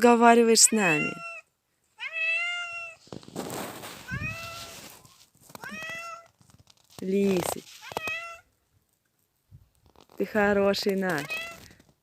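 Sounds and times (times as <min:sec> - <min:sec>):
person talking: 0:00.0 - 0:01.2, 0:07.0 - 0:07.7, 0:10.2 - 0:11.4
cat meowing: 0:00.6 - 0:03.0, 0:04.0 - 0:06.4, 0:07.8 - 0:08.5
noisy rustle: 0:03.0 - 0:08.4.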